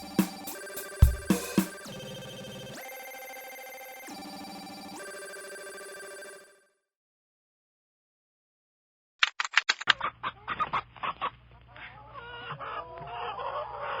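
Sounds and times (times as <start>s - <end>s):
chickens clucking: 10.3s - 14.0s.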